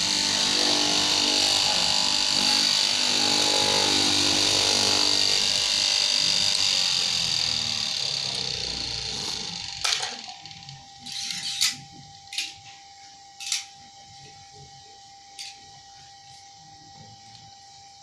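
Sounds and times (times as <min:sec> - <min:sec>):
fabric cutting machine motor running: 0:00.0 - 0:11.4.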